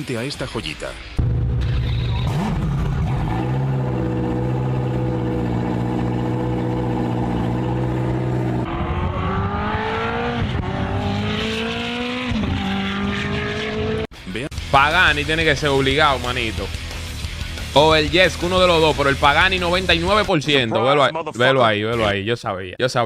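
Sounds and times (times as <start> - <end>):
supercar engine revving and accelerating: 1.7 - 14.1.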